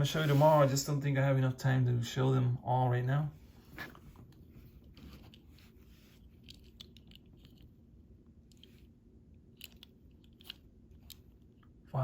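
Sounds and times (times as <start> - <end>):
faint clicks and crinkles: 3.8 - 7.8.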